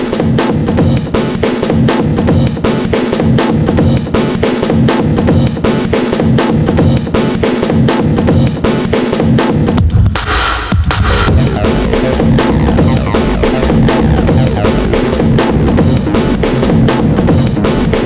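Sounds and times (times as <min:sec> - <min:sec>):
music with driving drum beat: 0:00.0 - 0:18.0
sustained bass tones: 0:11.1 - 0:18.0.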